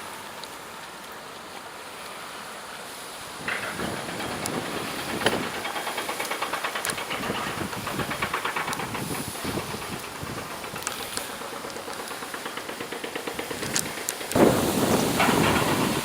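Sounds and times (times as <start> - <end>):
rhythmic hissing: 2.8 - 16.0.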